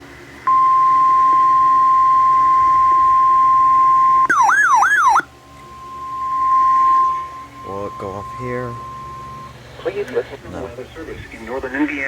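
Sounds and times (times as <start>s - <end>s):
steady high alert tone: 0.5s - 9.6s
warbling siren-like wail: 0.8s - 9.6s.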